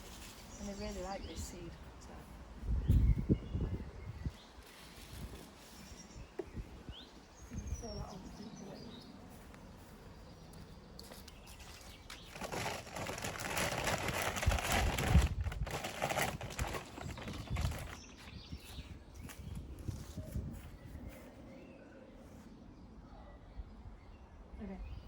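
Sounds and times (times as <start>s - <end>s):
birdseed rattling rustle: 11.4s - 18.4s.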